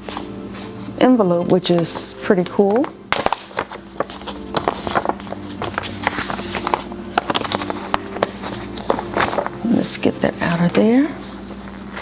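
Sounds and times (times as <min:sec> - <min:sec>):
envelope rustling and clicks: 0:01.7 - 0:09.6.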